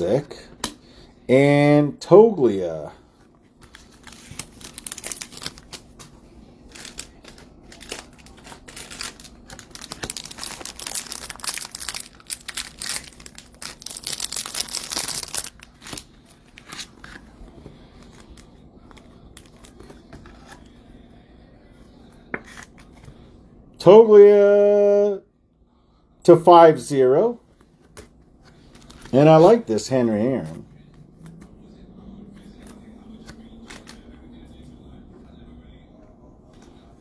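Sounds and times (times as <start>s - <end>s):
wrappers crinkling and tearing: 3.7s - 6.1s, 6.7s - 17.2s.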